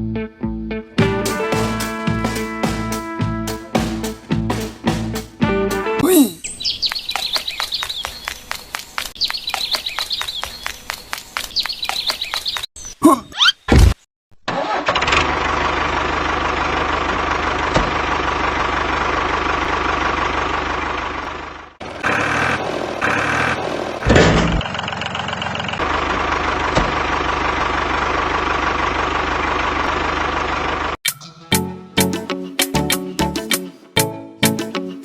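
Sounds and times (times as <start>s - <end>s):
engine running: 14.6s - 31.0s.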